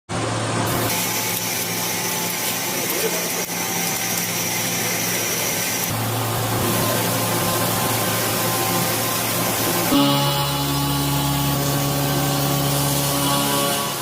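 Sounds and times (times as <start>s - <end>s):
machine hissing and humming: 0.1s - 14.0s.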